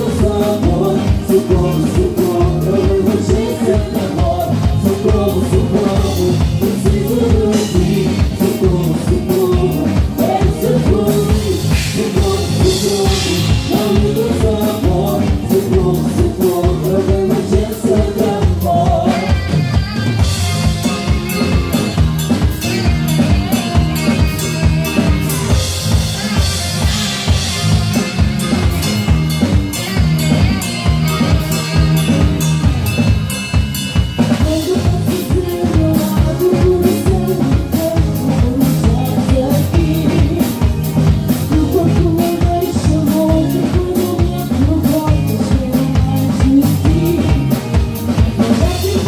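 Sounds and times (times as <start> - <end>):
drum-kit beat: 0.0 - 49.0
live band playing: 0.0 - 49.0
wavering lead melody: 0.0 - 49.0.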